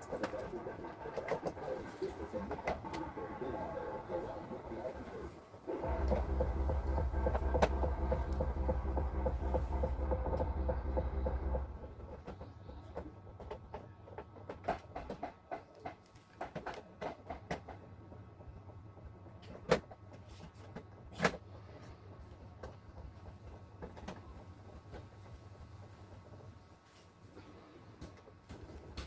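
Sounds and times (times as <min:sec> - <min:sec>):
electric hum: 0:01.8 - 0:12.2.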